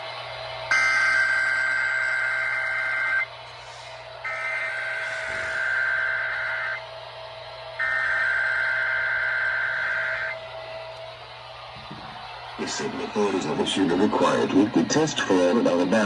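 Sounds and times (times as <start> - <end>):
digital data screech: 4.3 - 6.8, 7.8 - 10.4.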